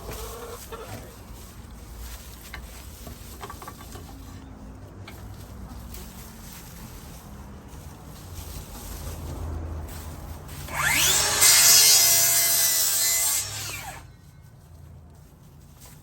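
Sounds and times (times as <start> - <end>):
power saw cutting wood: 10.7 - 14.1.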